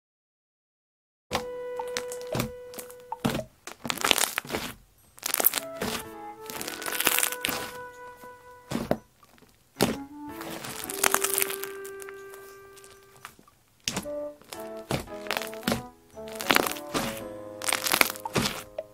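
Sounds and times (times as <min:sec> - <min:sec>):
background music with steady tones: 0:01.3 - 0:03.5, 0:05.0 - 0:09.2, 0:09.8 - 0:13.4, 0:14.0 - 0:18.9
slime crackling and squishing: 0:01.8 - 0:07.9, 0:08.7 - 0:18.9.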